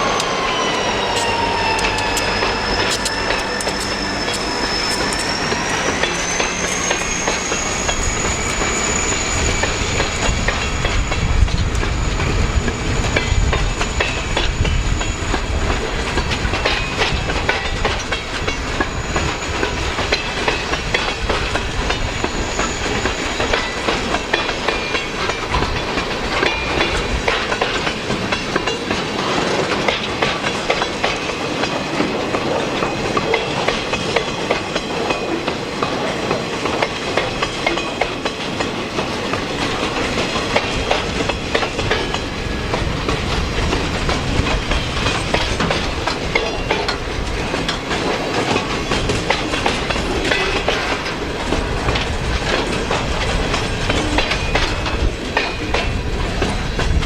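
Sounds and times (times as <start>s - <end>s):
high wheel squeal: 0.0s - 28.0s
freight train rumble: 0.0s - 57.0s
wheels clicking over rail joints: 9.6s - 57.0s.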